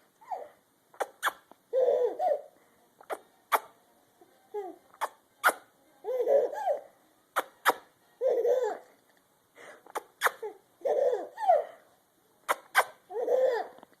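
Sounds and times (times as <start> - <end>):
baby laughing: 0.2 - 3.2, 4.6 - 8.9, 9.9 - 11.8, 12.5 - 13.8.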